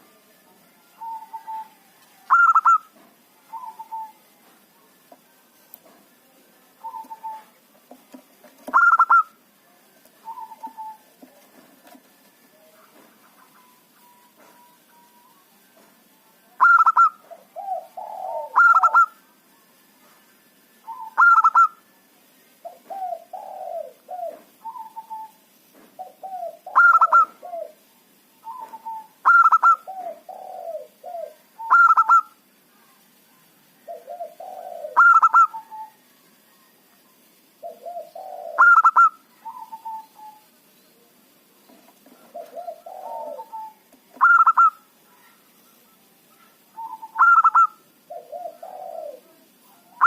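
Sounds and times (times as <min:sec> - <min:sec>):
dove cooing song: 0:01.0 - 0:04.2, 0:06.8 - 0:07.6, 0:08.6 - 0:09.4, 0:10.2 - 0:11.3, 0:16.6 - 0:19.2, 0:20.8 - 0:21.8, 0:22.6 - 0:25.4, 0:26.0 - 0:32.4, 0:33.8 - 0:36.1, 0:37.6 - 0:40.6, 0:42.0 - 0:44.9, 0:46.6 - 0:50.0.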